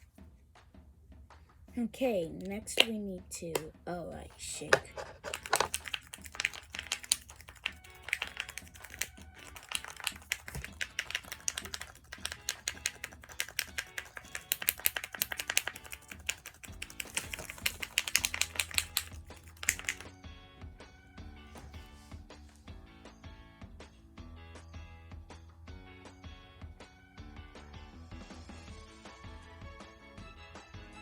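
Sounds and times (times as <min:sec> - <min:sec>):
background music: 0:00.0 - 0:31.0
toy container rattling: 0:02.4 - 0:20.1.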